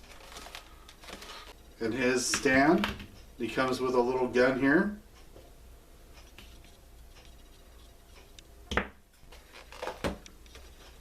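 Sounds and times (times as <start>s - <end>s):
plastic toy parts rustling: 0.0s - 1.6s, 9.2s - 11.0s.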